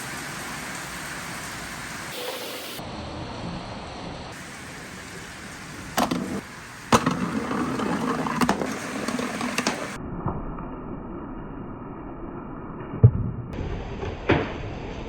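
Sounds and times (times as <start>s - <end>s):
balls clacking: 6.0s - 10.0s
balls rolling on wooden run: 6.0s - 10.0s.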